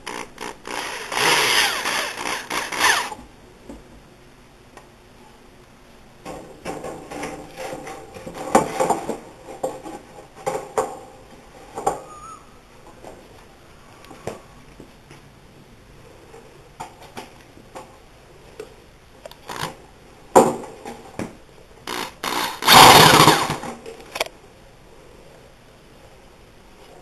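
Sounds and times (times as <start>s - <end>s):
rasping woodworking tool: 0.0s - 3.2s
wood and tools clattering: 6.2s - 12.1s.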